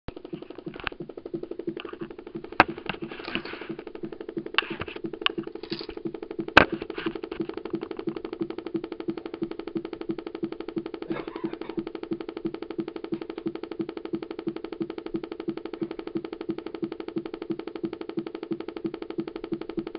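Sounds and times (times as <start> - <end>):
computer pulsing hum: 0.0 - 19.9
sharp clicks: 0.1 - 19.9.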